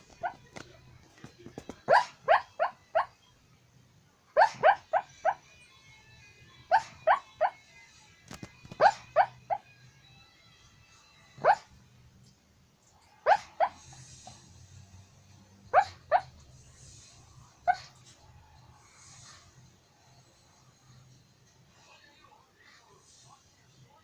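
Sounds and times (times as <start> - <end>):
sleeping dog yipping: 0.0 - 0.6, 1.8 - 3.2, 4.4 - 5.5, 6.7 - 7.7, 8.7 - 9.7, 11.4 - 11.8, 13.2 - 14.4, 15.7 - 16.4, 17.6 - 18.0.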